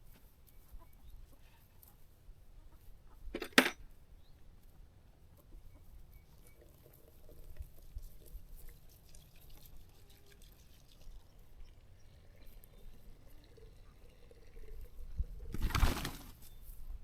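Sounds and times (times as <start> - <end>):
chickens moving about: 13.5 - 16.8.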